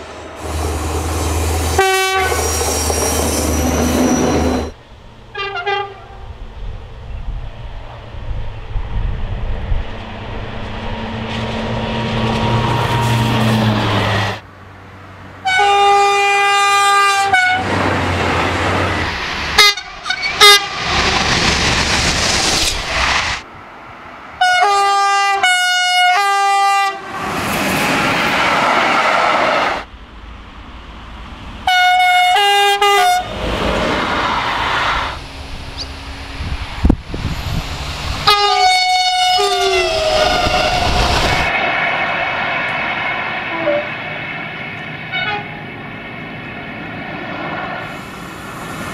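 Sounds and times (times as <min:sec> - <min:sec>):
passing trains rushing: 0:00.0 - 0:48.9
train horn blasts: 0:01.7 - 0:02.7, 0:05.3 - 0:06.2, 0:15.4 - 0:17.6, 0:19.6 - 0:20.7, 0:24.4 - 0:27.2, 0:31.7 - 0:33.3, 0:38.2 - 0:41.0, 0:45.1 - 0:45.6.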